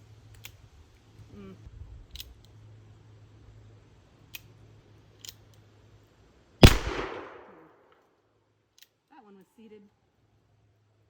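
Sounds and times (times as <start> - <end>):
revolver clicks: 6.6 - 7.6
loud revolver gunshot: 6.6 - 7.7.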